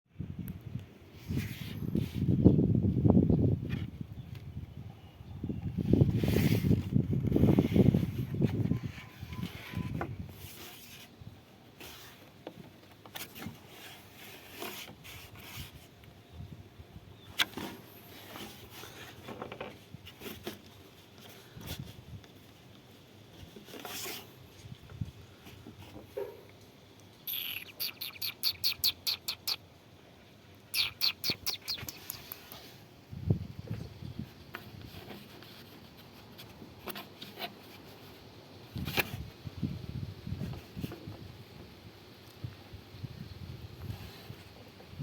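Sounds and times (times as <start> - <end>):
bird chirping: 27.2 - 29.6, 30.7 - 32.5.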